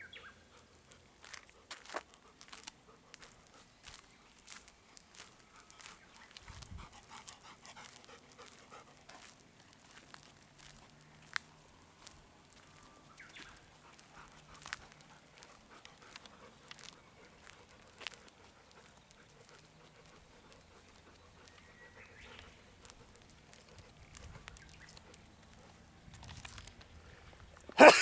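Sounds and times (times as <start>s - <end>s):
small dog noises: 0.0s - 28.0s
dog clicking sounds: 13.3s - 27.0s.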